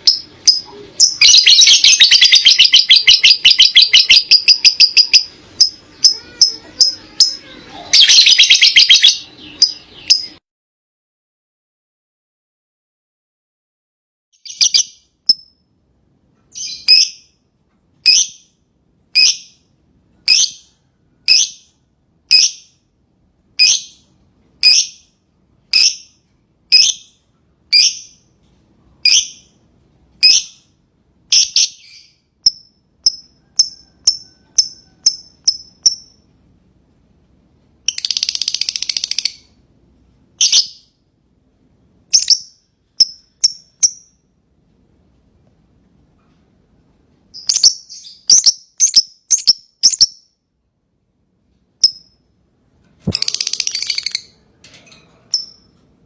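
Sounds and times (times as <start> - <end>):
lovebird calling: 0.0 - 10.4, 53.0 - 54.3
lovebird chattering trill: 0.0 - 10.4, 14.4 - 15.4, 42.1 - 44.2, 47.4 - 50.3, 53.1 - 54.4.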